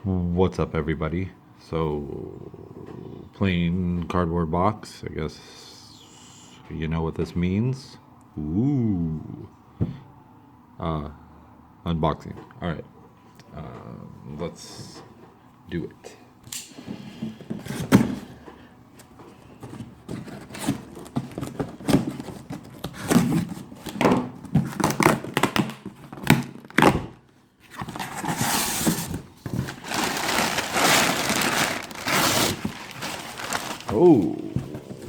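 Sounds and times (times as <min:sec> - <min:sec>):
packing crinkling and tearing: 0:24.6 - 0:27.1, 0:27.7 - 0:34.4.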